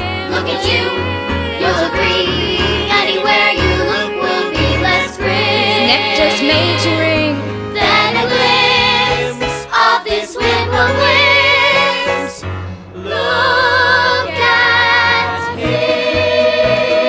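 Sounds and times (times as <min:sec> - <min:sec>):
band accompaniment: 0:00.0 - 0:12.8
chorus singing held notes: 0:00.0 - 0:17.0.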